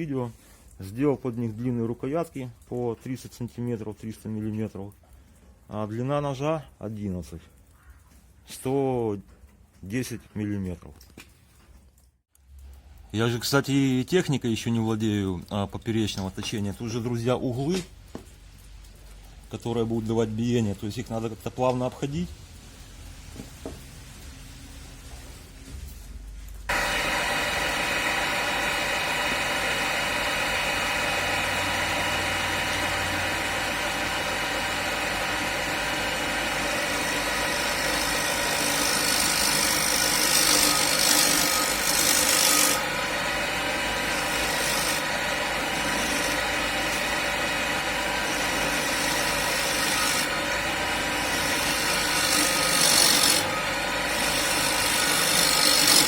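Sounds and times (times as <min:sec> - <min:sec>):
lathe motor whine: 0:26.7 - 0:56.0
gouge scraping wood: 0:32.0 - 0:43.0, 0:43.8 - 0:56.0.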